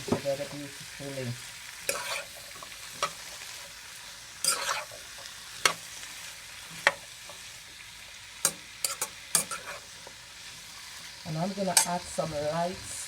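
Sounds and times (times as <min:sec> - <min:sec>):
food sizzling in a wok: 0:00.0 - 0:13.0
utensil scraping and clacking on pan: 0:01.8 - 0:03.8, 0:04.4 - 0:05.9, 0:08.4 - 0:10.2.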